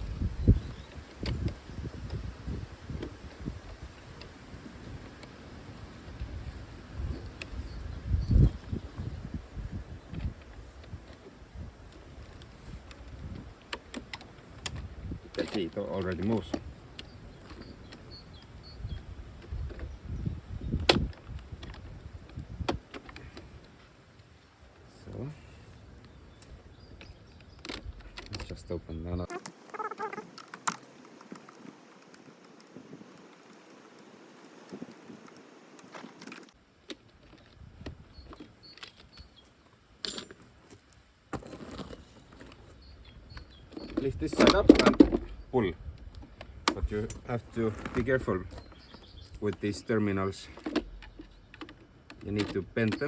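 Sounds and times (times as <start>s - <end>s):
parts bumping and rubbing: 29.2s - 36.6s
light clicks and clinks: 29.4s - 36.6s, 40.0s - 40.8s, 46.4s - 47.6s.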